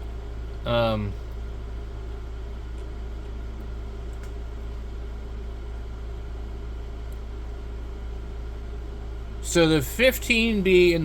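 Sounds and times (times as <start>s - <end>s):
low background hum: 0.0s - 11.0s.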